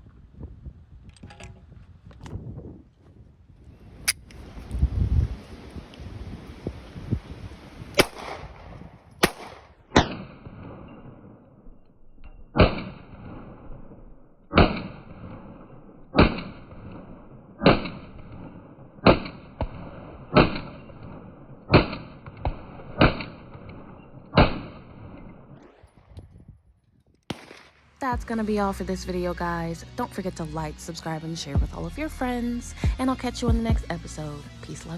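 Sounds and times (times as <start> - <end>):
pistol shots with echo: 8.0 - 11.4, 14.5 - 25.8, 27.3 - 27.9.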